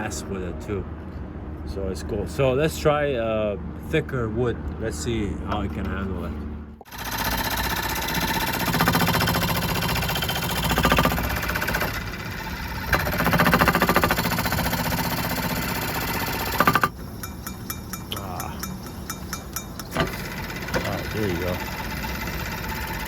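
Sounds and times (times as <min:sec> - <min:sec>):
jigsaw cutting wood: 0:06.9 - 0:16.9, 0:20.0 - 0:23.0.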